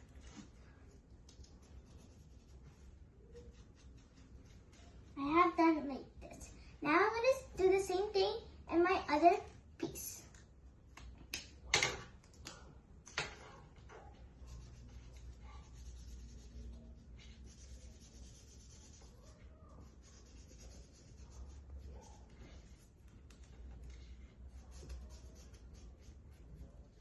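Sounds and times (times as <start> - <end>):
marker pen scratching paper: 1.3 - 5.2, 13.4 - 27.0.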